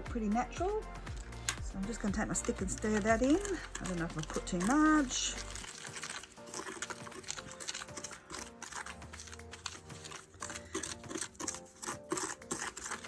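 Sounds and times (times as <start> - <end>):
faint background music: 0.0 - 13.0
stir stick scraping sand mixture: 0.0 - 13.0.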